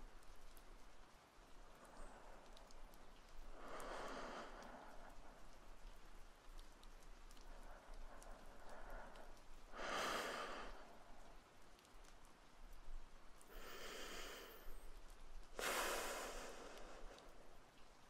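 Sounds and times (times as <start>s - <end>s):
faint steady rain: 0.0s - 18.0s
man breathing slowly: 1.6s - 6.0s, 7.3s - 11.4s, 13.4s - 17.7s.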